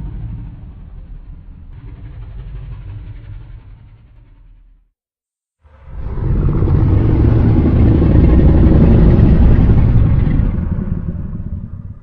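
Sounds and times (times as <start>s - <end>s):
low rough creature bellow: 5.7s - 12.0s.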